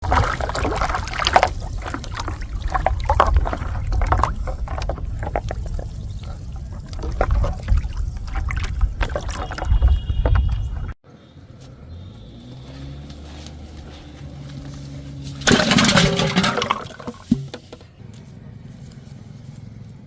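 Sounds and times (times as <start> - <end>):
water splashing and sloshing: 0.0 - 11.0, 13.1 - 17.9.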